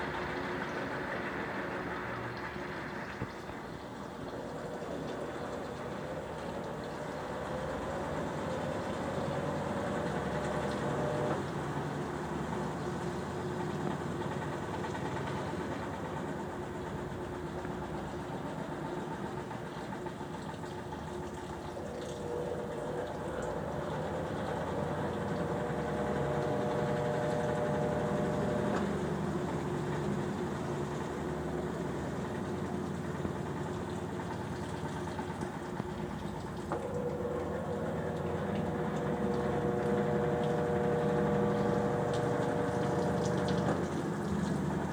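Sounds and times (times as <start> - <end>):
motor whine: 0.0 - 16.9, 21.6 - 44.9
washing machine churning: 0.0 - 44.9.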